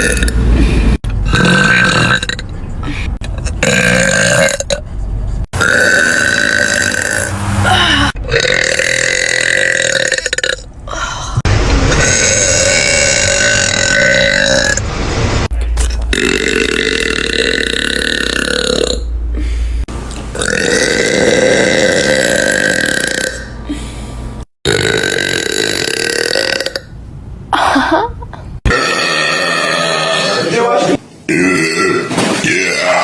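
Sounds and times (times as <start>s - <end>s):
woman burping: 5.6s - 11.2s, 20.4s - 23.5s.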